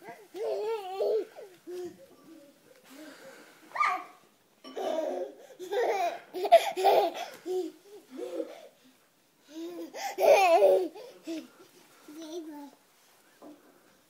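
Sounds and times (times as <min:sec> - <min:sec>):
toddler laughing and babbling: 0:00.0 - 0:02.6, 0:03.7 - 0:08.7, 0:09.5 - 0:12.8.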